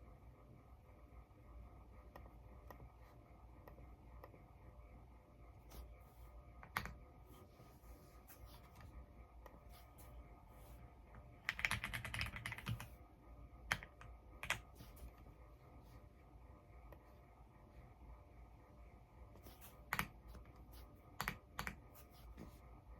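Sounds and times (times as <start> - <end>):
mechanical keyboard typing: 6.6 - 7.0, 11.4 - 12.9, 13.7 - 14.7, 21.2 - 21.8.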